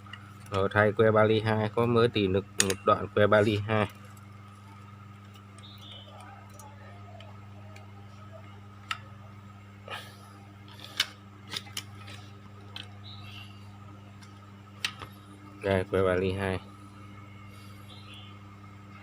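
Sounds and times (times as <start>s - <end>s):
arc welder humming: 0.0s - 19.0s.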